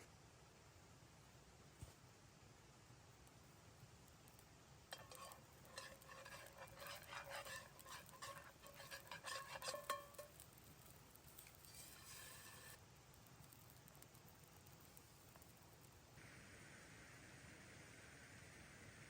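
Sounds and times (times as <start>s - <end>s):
faint metallic clinking and scraping: 4.2s - 16.1s.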